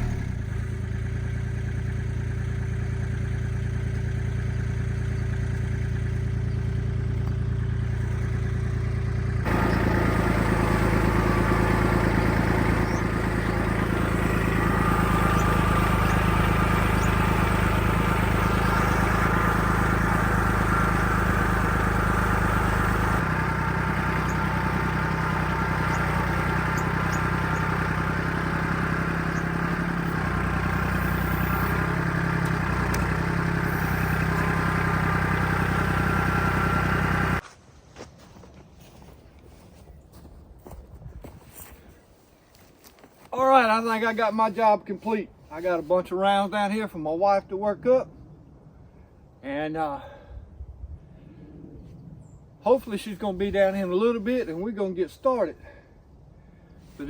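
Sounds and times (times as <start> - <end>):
engine running: 0.0 - 37.5.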